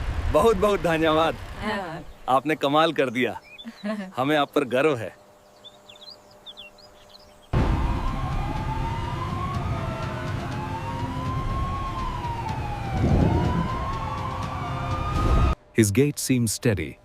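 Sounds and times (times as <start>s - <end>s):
loud low rumble: 7.6s - 15.6s
siren wailing: 7.6s - 15.6s.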